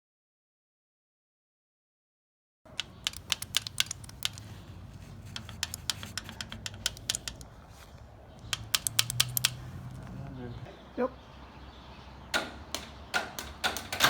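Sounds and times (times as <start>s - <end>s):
tools clicking on engine parts: 2.7s - 10.4s.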